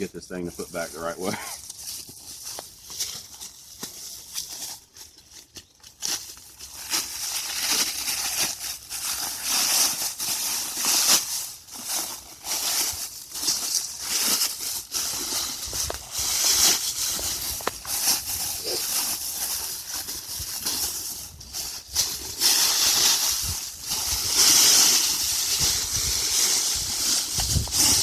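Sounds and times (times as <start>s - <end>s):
foil bag crinkling: 0.0s - 28.0s
wind buffeting microphone: 25.6s - 28.0s.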